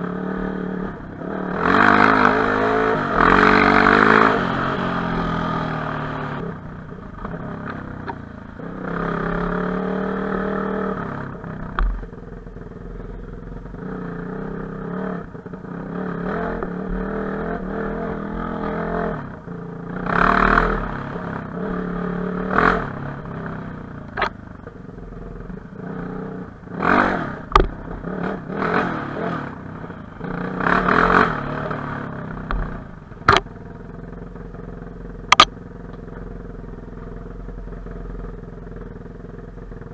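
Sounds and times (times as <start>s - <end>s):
motorcycle engine revving: 0.0s - 39.9s
sharp knocks and clatter: 32.5s - 33.6s.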